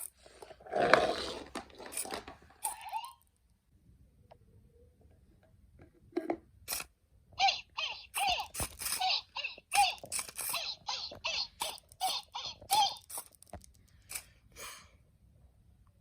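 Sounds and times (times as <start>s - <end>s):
toy electronic voice chirping: 7.4s - 13.3s.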